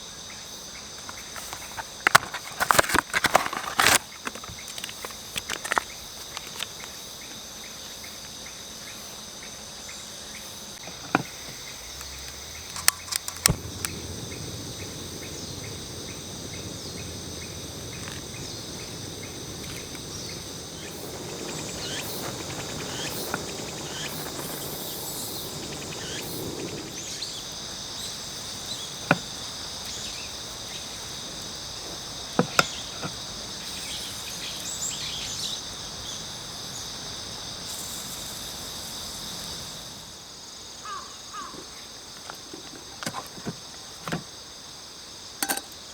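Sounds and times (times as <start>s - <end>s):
insects chirring: 0.0s - 45.9s
soft rushing noise: 13.4s - 27.9s.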